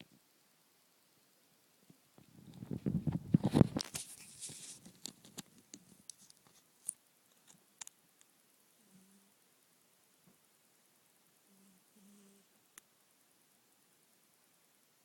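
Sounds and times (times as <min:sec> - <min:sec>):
rustling and crackling clicks: 0:01.8 - 0:08.3.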